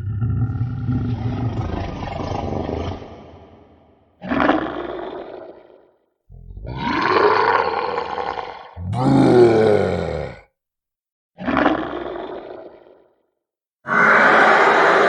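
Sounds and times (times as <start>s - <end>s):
dragon roaring: 0.0s - 1.9s, 6.3s - 10.5s, 13.9s - 15.0s.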